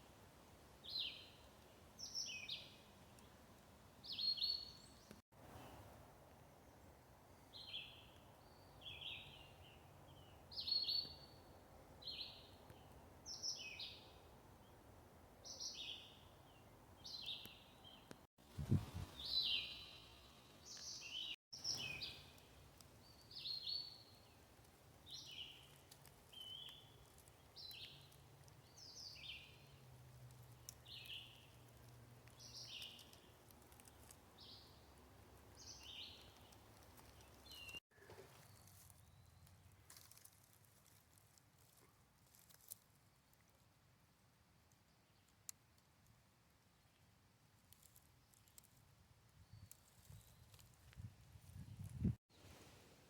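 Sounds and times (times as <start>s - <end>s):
songbird calling: 19.1s - 24.4s.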